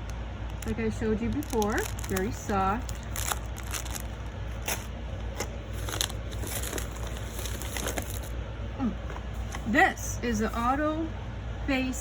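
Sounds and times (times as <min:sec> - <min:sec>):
packaging crinkling and rustling: 0:00.0 - 0:08.4
steady low hum: 0:00.0 - 0:12.0.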